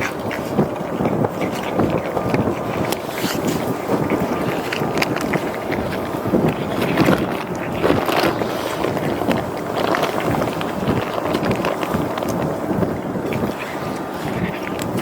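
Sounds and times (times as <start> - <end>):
wind buffeting microphone: 0.0 - 15.0.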